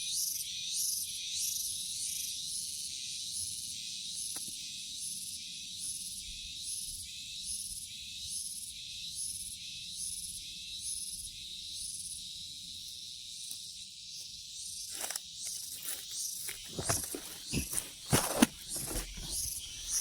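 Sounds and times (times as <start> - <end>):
insects chirping: 0.1 - 20.0
rustling: 14.9 - 20.0
sharp knocks and thumps: 16.4 - 20.0.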